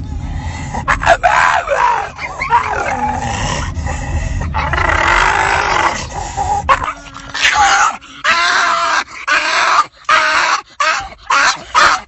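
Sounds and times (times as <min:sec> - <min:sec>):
dog vocalizing: 0:05.6 - 0:12.0.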